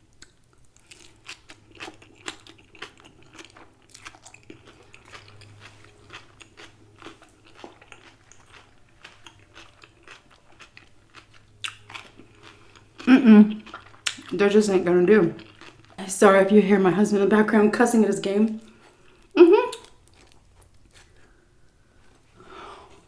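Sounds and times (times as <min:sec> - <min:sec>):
wet chewing clicks: 0:00.1 - 0:16.0, 0:19.0 - 0:21.2
crisp crunching while eating: 0:00.2 - 0:16.0, 0:18.8 - 0:21.3.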